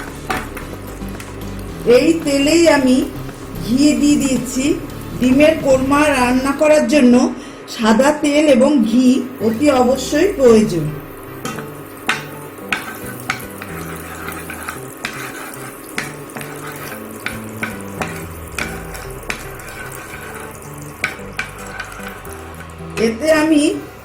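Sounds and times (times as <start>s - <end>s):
metal ladle knocking pan: 0.0s - 5.8s, 11.3s - 23.4s
oil frying sizzle: 0.0s - 7.3s, 8.8s - 24.0s.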